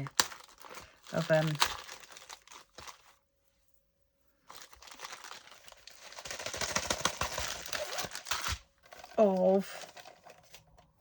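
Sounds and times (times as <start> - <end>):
packaging crinkling and rustling: 0.0 - 3.2, 4.4 - 11.0.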